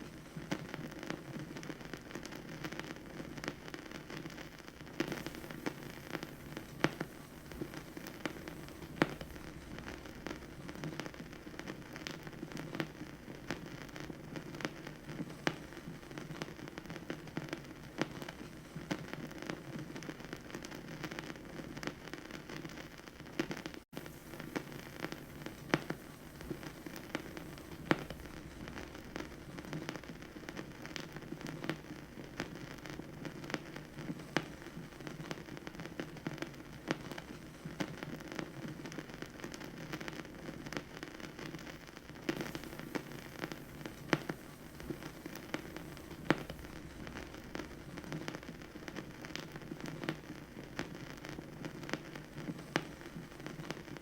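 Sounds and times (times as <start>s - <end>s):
vinyl crackles and pops: 0.0s - 54.0s
vinyl hiss and rumble: 0.0s - 54.0s.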